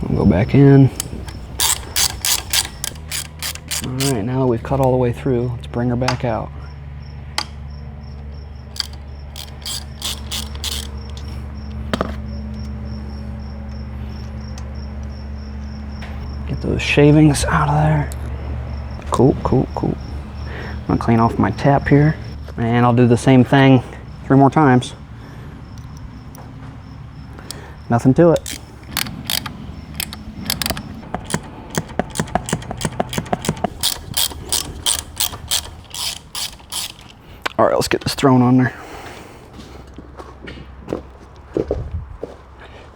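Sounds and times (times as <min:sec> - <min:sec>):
tap scraping ratcheting strokes: 0:00.0 - 0:04.2, 0:08.7 - 0:12.2, 0:28.3 - 0:37.6
crickets chirping: 0:00.0 - 0:39.6
metal clack: 0:00.9 - 0:04.2, 0:08.8 - 0:11.3, 0:28.4 - 0:37.6.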